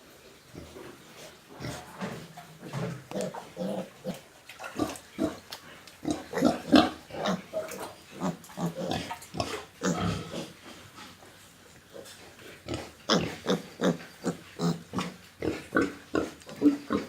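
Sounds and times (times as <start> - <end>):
pigs grunting: 1.6 - 5.4, 6.0 - 10.6, 12.0 - 17.0.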